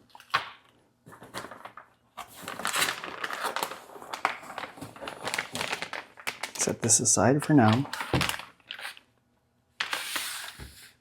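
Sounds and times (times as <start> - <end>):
sharp packaging rustle: 1.1 - 6.8, 7.6 - 9.0
plastic and paper crinkling: 1.1 - 9.0.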